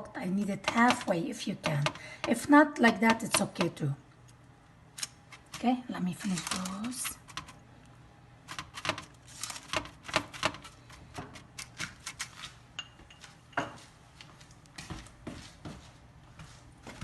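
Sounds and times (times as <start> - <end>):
utensil scraping and tapping a dish: 0.5 - 3.8.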